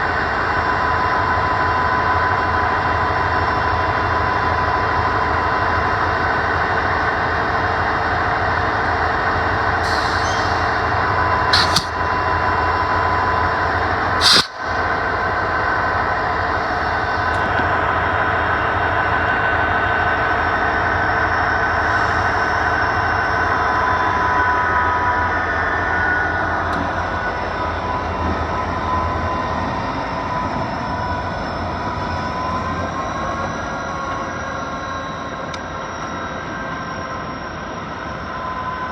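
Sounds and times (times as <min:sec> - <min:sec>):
locomotive engine running: 0:07.6 - 0:29.6
short hisses: 0:09.8 - 0:10.9, 0:11.5 - 0:12.0, 0:14.2 - 0:14.8.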